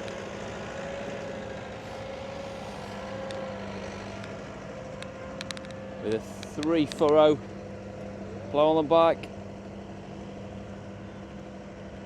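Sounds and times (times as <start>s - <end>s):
tractor diesel engine running: 0.0s - 12.0s
wavering whine: 1.1s - 7.3s.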